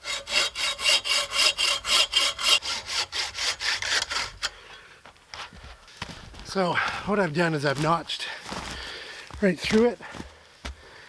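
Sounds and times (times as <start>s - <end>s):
hand saw cutting wood: 0.0s - 4.5s.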